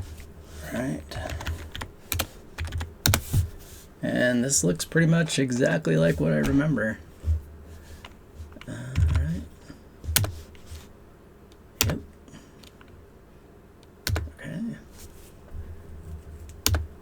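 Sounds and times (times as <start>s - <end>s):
keyboard key clicks: 14.1s - 14.3s, 16.5s - 16.9s.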